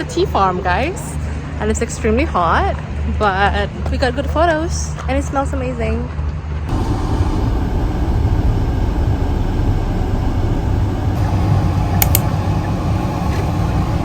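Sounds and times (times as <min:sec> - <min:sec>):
car engine and tyres rumbling: 0:02.9 - 0:14.0
short high clicks: 0:12.0 - 0:12.2.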